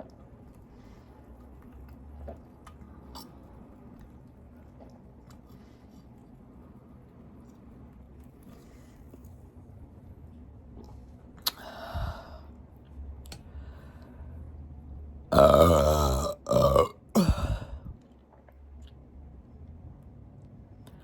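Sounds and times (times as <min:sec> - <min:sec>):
person burping: 0:15.3 - 0:18.0.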